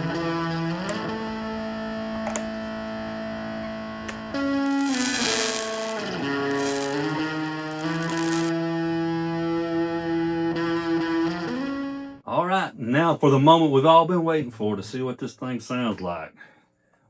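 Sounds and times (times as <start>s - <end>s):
electric guitar through an amp: 0.0s - 12.2s.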